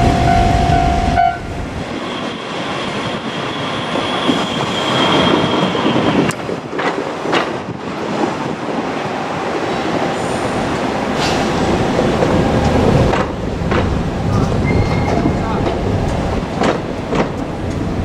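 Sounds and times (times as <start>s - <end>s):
train rumbling on rails: 0.0s - 18.0s
high wheel squeal: 1.9s - 6.3s, 14.3s - 15.6s
wheels clacking over rail joints: 5.3s - 8.3s, 10.8s - 18.0s.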